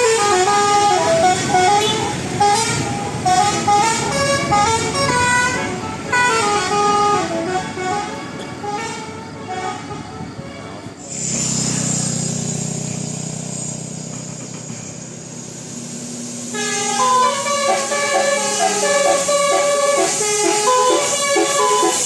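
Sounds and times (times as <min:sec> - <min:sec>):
musical air horn melody: 0:00.0 - 0:11.9, 0:16.4 - 0:22.0.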